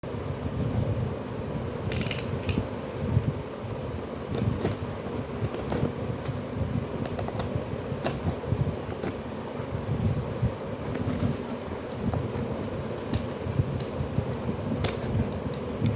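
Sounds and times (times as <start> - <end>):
steady low rumble: 0.0 - 15.9
packaging clicks and taps: 1.9 - 2.6.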